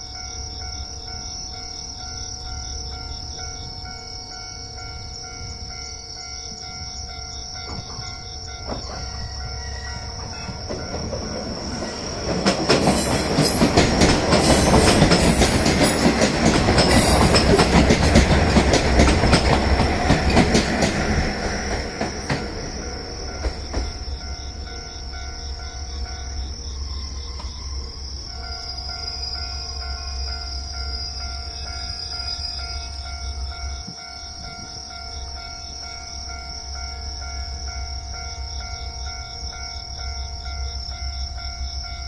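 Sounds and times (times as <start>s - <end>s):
diesel railcar rumble: 0.0s - 42.0s
high insect trill: 0.0s - 42.0s
wheel clacks over rail joints: 7.6s - 24.1s.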